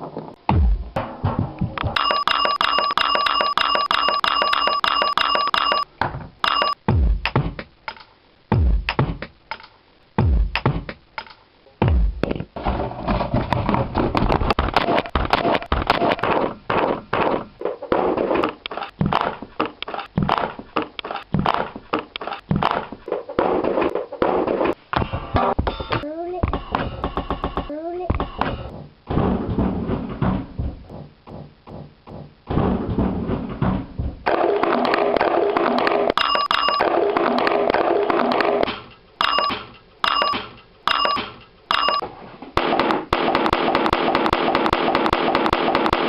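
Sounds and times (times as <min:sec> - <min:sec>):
heavy bass thumps: 0:00.4 - 0:01.8, 0:06.8 - 0:07.7, 0:08.5 - 0:09.3, 0:10.2 - 0:11.0, 0:11.8 - 0:12.3, 0:28.2 - 0:34.3.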